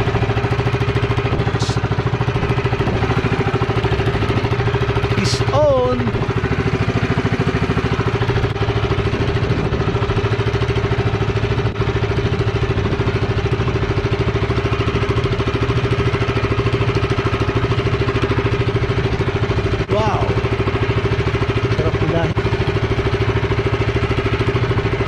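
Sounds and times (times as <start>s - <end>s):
small engine idling: 0.0s - 25.0s.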